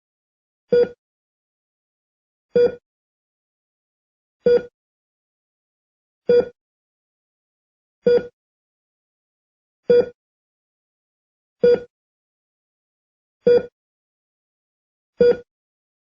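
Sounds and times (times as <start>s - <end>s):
heart monitor beeping: 0.7s - 1.0s, 2.6s - 2.8s, 4.5s - 4.7s, 6.3s - 6.6s, 8.0s - 8.4s, 9.9s - 10.2s, 11.6s - 11.9s, 13.4s - 13.7s, 15.2s - 15.5s.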